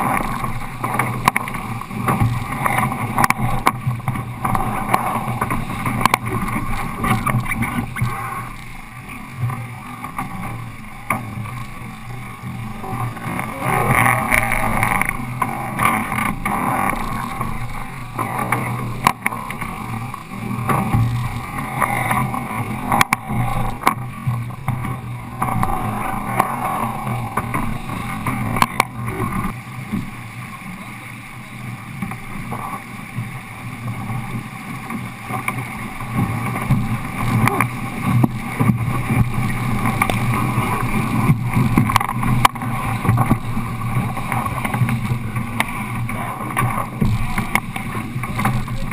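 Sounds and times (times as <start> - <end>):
low rumble: 0.0 - 30.2
water noise: 0.0 - 48.9
wind: 0.0 - 48.9.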